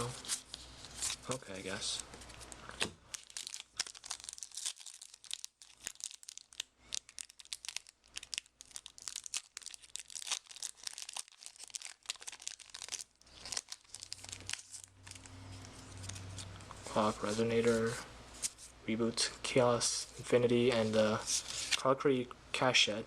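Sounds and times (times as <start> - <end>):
foil wrapper crinkling and tearing: 0.3 - 16.4.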